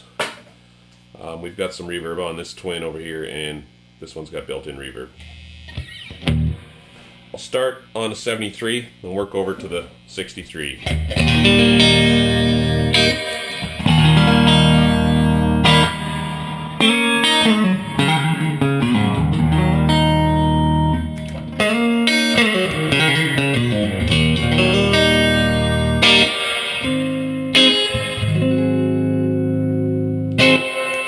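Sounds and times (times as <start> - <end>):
clean electric guitar chords: 5.2 - 7.0, 10.8 - 31.0
descending guitar single notes: 5.2 - 7.0, 10.8 - 31.0.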